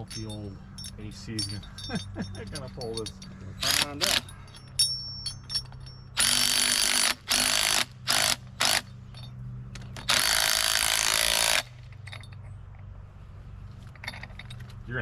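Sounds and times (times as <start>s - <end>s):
power drill driving bolt into wood: 6.2s - 8.8s, 10.1s - 11.7s.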